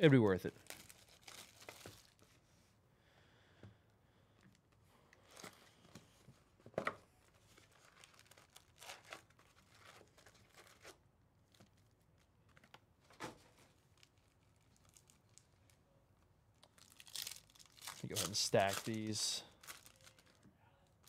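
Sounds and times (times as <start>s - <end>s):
plastic wrap tearing and crinkling: 0.5s - 2.3s, 7.4s - 12.8s, 13.6s - 15.7s, 16.6s - 20.5s.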